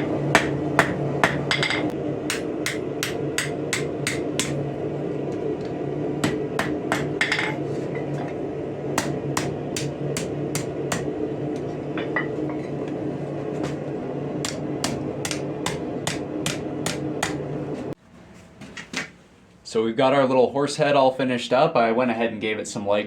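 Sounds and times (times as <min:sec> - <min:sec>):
hammer striking steel on anvil: 0:00.0 - 0:04.6, 0:06.2 - 0:08.1, 0:09.0 - 0:11.1, 0:14.4 - 0:17.4
steady low hum: 0:00.0 - 0:21.5.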